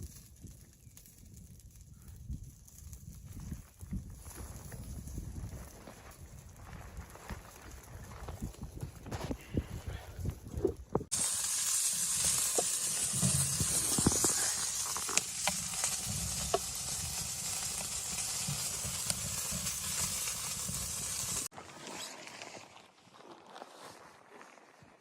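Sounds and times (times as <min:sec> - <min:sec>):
food sizzling in a pan: 0:11.1 - 0:21.5.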